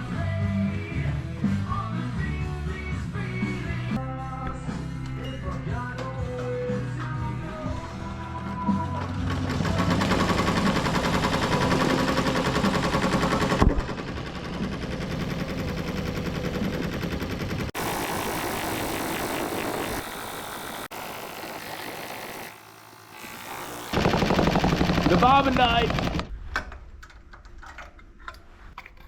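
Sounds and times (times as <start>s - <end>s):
embroidery machine stitching: 9.2s - 13.7s.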